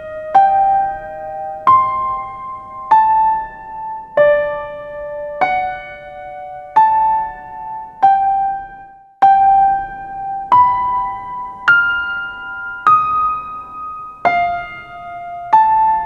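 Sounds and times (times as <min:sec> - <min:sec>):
soft electric piano chords: 0:00.0 - 0:16.0.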